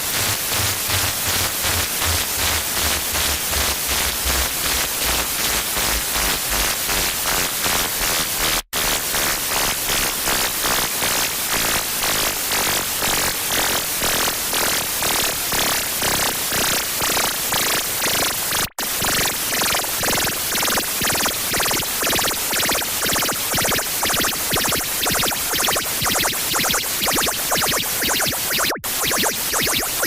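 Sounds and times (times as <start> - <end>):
distorted pulsing static noise: 0.0 - 9.6, 18.4 - 30.0.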